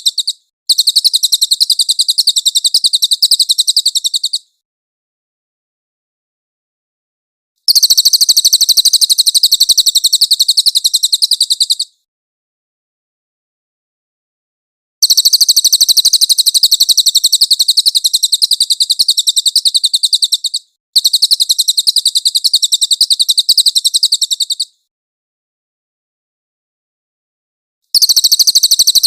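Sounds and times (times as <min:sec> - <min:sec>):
bird singing high-pitched trills: 0:00.0 - 0:04.5, 0:07.7 - 0:12.0, 0:15.0 - 0:24.8, 0:28.0 - 0:29.0.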